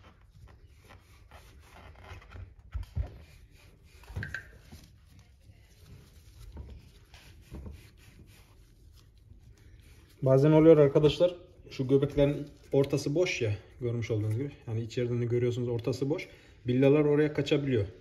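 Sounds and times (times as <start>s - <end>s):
light rubbing on bicycle hub: 0.0s - 11.2s.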